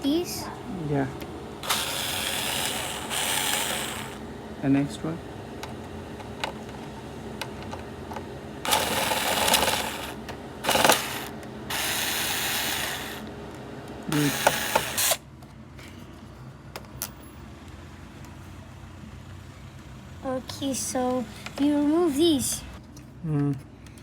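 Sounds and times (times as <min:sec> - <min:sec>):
screwdriver rasping: 0:01.6 - 0:04.2, 0:08.7 - 0:13.3, 0:14.1 - 0:15.2.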